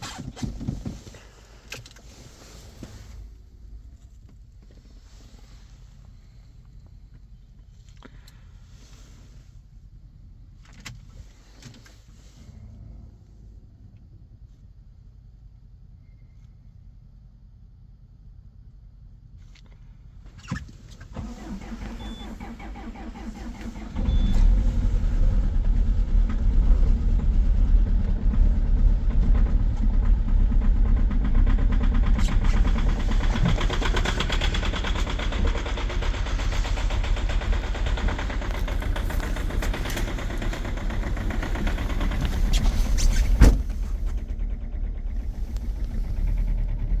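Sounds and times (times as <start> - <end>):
engine starter cranking: 21.0 - 47.0
diesel engine knocking: 21.2 - 47.0.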